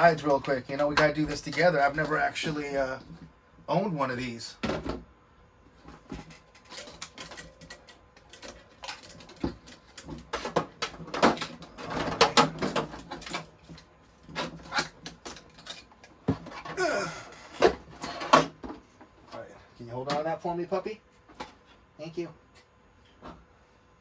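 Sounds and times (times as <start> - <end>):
clicks and knocks of parts handled: 5.8 - 16.8.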